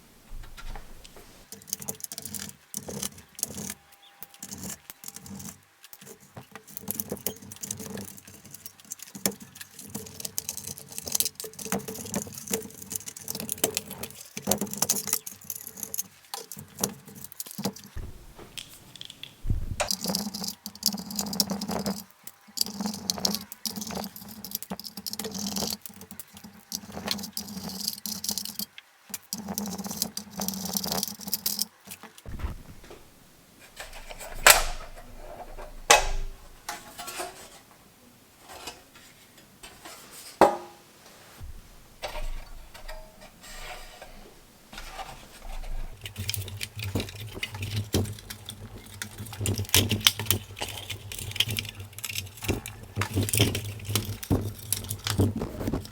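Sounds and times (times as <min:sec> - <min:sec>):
small parts and tools handled: 0:00.3 - 0:37.8, 0:41.4 - 0:55.9
low hum: 0:18.0 - 0:19.9, 0:32.3 - 0:33.5.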